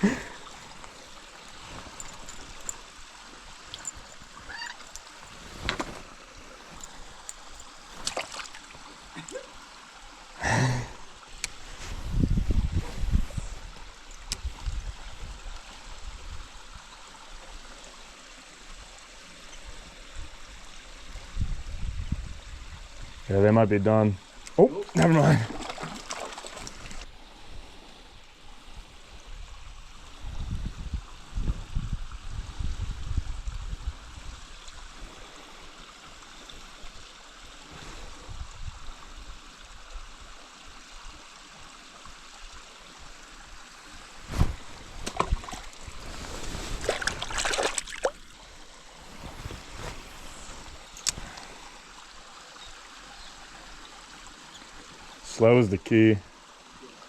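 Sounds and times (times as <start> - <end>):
rustles: 0.0 - 9.3, 11.4 - 14.7, 43.7 - 52.0
mountain stream trickling: 0.0 - 57.0.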